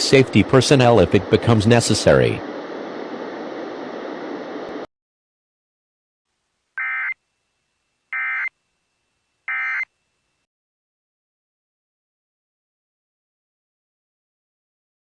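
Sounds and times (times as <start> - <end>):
steady hiss: 0.0 - 4.9
buzzy two-tone digital data tones: 6.8 - 7.2, 9.5 - 9.9.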